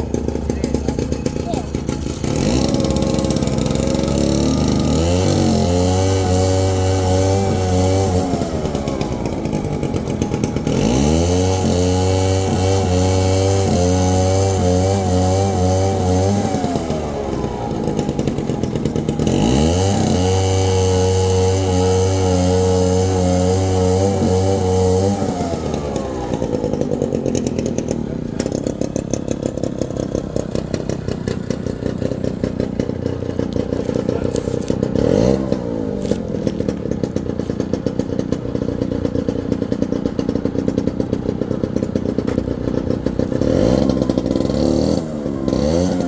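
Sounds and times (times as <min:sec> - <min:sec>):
chainsaw engine revving: 0:00.0 - 0:46.0.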